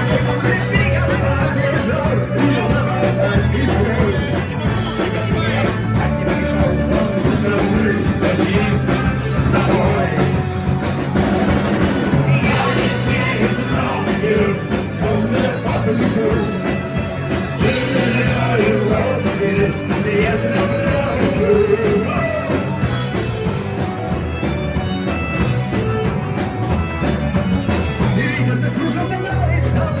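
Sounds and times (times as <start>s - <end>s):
person singing: 0.0s - 10.8s, 12.1s - 23.4s
rock music: 0.0s - 30.0s.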